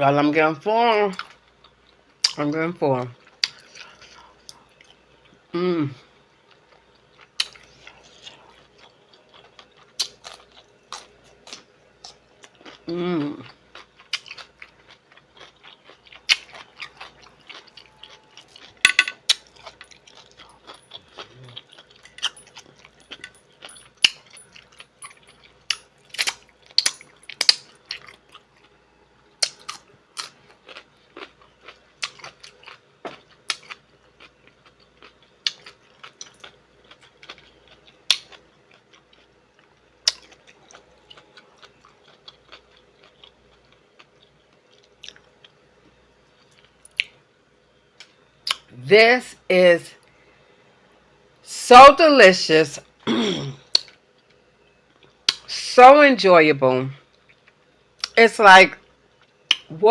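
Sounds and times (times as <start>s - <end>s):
person chewing crunchy food: 3.2s - 5.4s, 6.5s - 28.8s, 29.4s - 45.6s.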